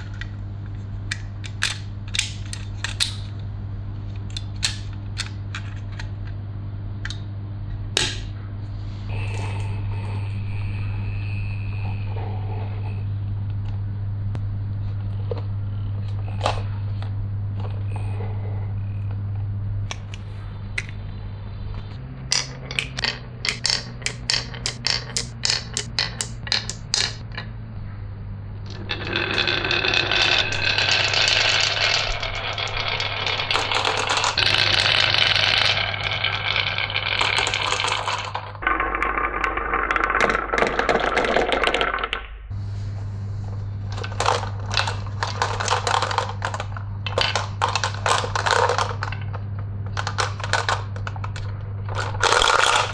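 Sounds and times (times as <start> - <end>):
steady low hum: 0.0 - 38.8, 42.4 - 52.9
marbles clattering down tracks: 9.1 - 10.3, 22.3 - 27.4, 28.7 - 52.9.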